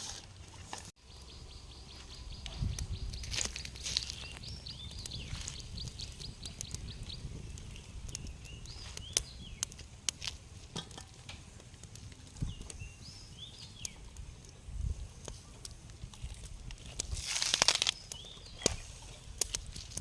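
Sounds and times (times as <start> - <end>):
birds chirping: 1.0 - 10.3, 10.9 - 15.7, 17.7 - 19.5.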